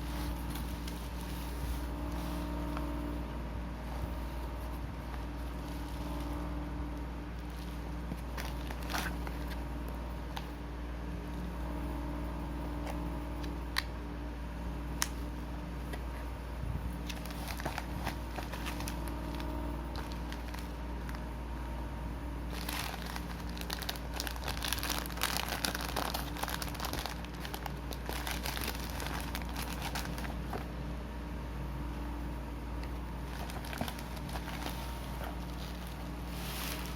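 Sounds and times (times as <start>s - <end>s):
plastic packaging crinkling: 0.0s - 3.0s, 3.9s - 10.6s, 17.0s - 21.2s, 22.5s - 30.7s, 32.9s - 36.9s
steady low hum: 0.0s - 36.9s.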